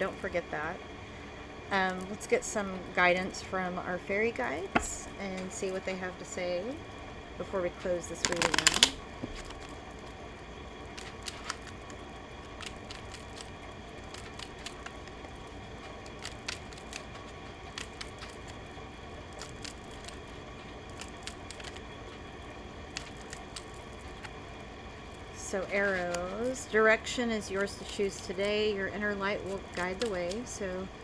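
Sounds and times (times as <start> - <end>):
low room noise: 0.0 - 31.0
card deck being shuffled: 8.2 - 10.2, 10.9 - 24.4, 25.1 - 26.7, 29.4 - 30.6.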